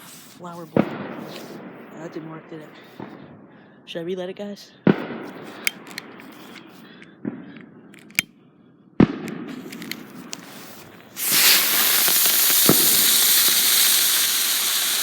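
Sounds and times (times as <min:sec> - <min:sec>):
ground firework hissing: 0:00.0 - 0:01.7, 0:05.3 - 0:06.8, 0:09.5 - 0:15.0
firecracker bangs: 0:00.0 - 0:02.1, 0:04.9 - 0:07.6, 0:09.0 - 0:15.0.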